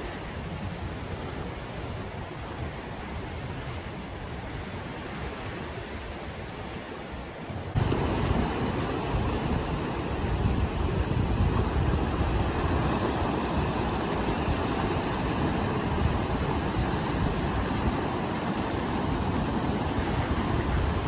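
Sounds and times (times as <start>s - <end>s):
ocean surf washing: 0.0s - 21.0s
wind buffeting microphone: 7.5s - 21.0s.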